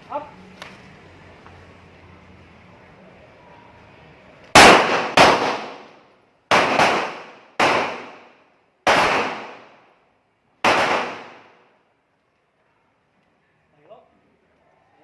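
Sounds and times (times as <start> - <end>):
handgun shots with echo: 4.6 - 8.3, 8.9 - 9.8, 10.6 - 11.6.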